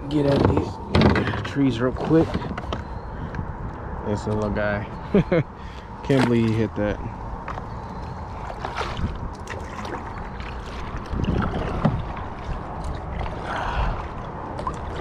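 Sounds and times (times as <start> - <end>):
kayak handling noise: 0.0 - 3.5, 6.1 - 6.7, 7.4 - 13.4
wind rumbling on microphone: 0.0 - 15.0
water splashing: 7.6 - 15.0.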